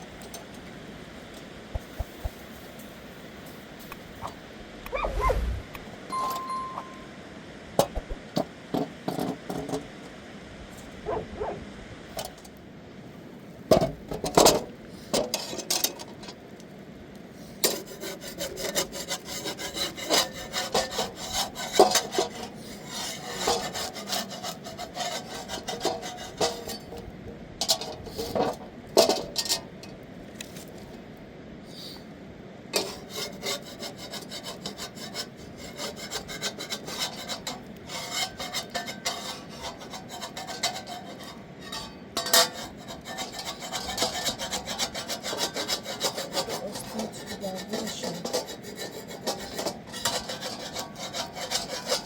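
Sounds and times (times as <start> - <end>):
rapid scraping strokes: 3.5 - 5.8, 32.8 - 52.0
knocks and clicks: 7.9 - 8.2.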